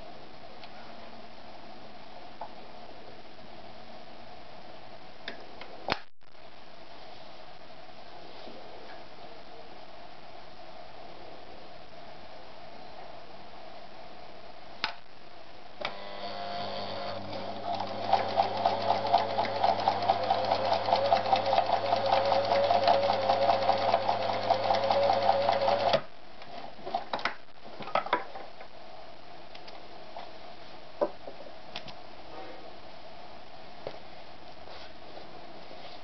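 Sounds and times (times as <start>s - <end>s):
sewing machine stitching: 15.8s - 26.0s.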